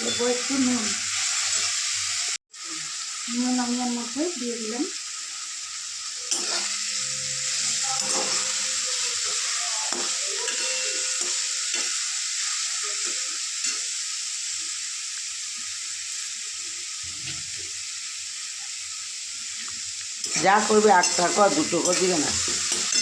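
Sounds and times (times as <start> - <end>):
food sizzling in hot oil: 0.0 - 23.0
spatula scraping and knocking pan: 6.3 - 12.0, 20.2 - 23.0.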